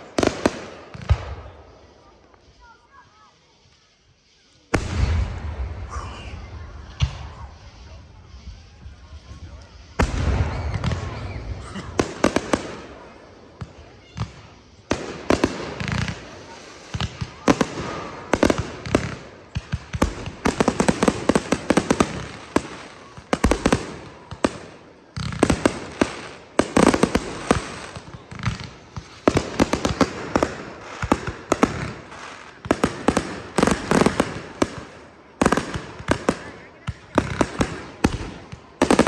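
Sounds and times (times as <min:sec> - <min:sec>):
fireworks bangs and crackling: 0:00.0 - 0:39.0.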